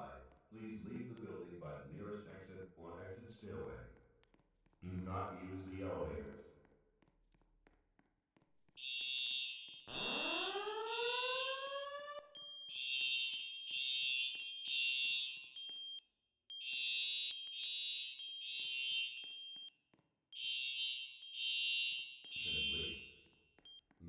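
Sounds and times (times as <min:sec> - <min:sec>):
fire alarm beeps: 0:08.8 - 0:23.9.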